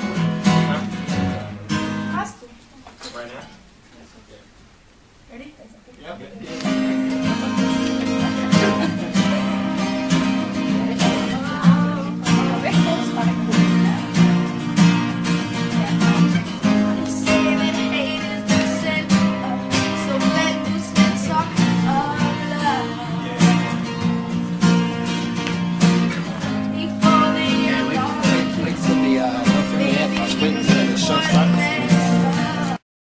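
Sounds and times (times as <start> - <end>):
acoustic guitar strumming: 0.0 - 2.4, 6.5 - 32.8
person singing: 6.6 - 14.1, 15.6 - 24.4, 26.1 - 32.8.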